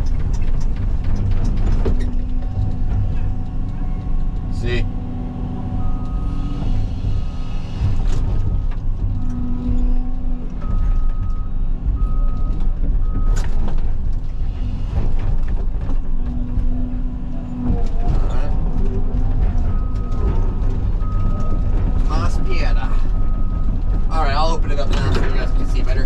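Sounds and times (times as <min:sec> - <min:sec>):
excavator diesel engine running: 0:00.0 - 0:26.0
backup alarm beeping: 0:05.7 - 0:13.6, 0:17.6 - 0:26.0.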